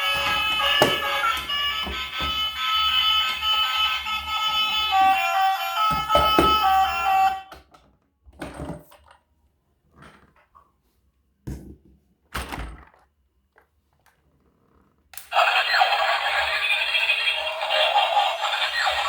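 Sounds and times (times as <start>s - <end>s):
knocks and thuds on toy packaging: 0.2s - 2.4s, 5.9s - 6.6s.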